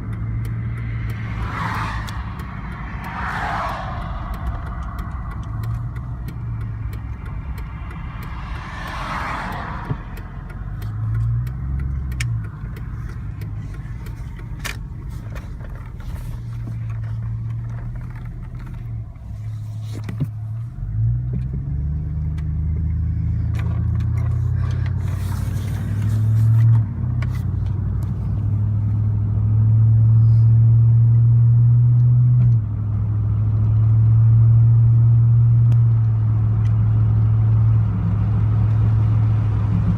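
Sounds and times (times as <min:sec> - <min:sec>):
sharp clicks: 0:00.0 - 0:19.0.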